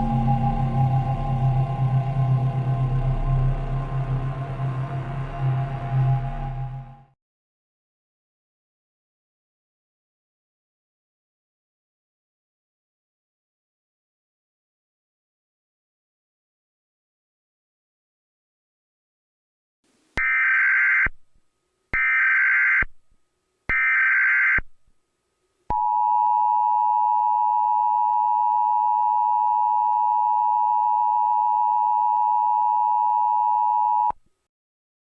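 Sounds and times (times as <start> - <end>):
screeching digital data tones: 0.0 - 6.9.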